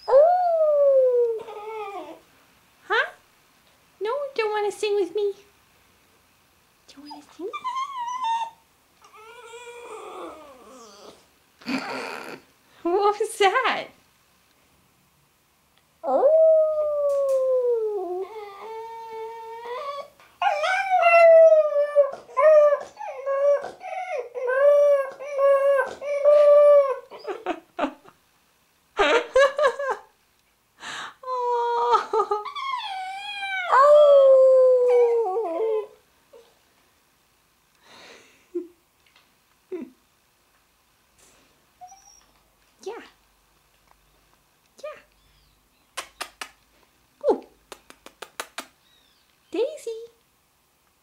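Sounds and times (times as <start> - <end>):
puppy howling: 0.0 - 2.2, 7.5 - 11.2, 16.0 - 27.5, 32.4 - 36.0.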